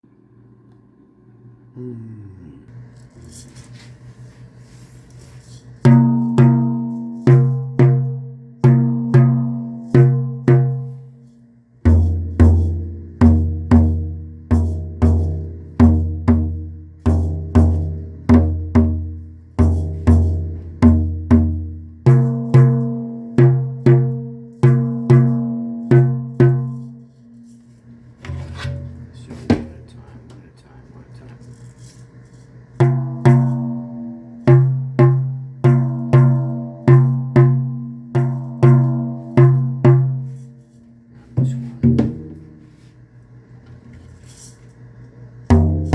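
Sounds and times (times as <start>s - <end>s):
high-pitched frame drum beats: 5.9s - 11.2s
deep frame drum beats: 11.9s - 26.9s, 41.4s - 42.6s.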